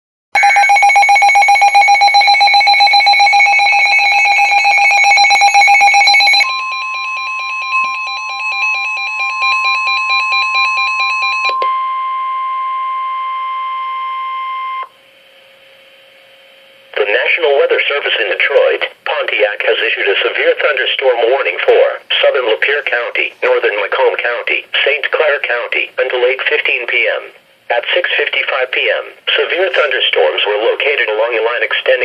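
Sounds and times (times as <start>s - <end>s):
rapid loud electronic beeping: 0.4s - 10.6s
steady alarm tone: 0.4s - 15.0s.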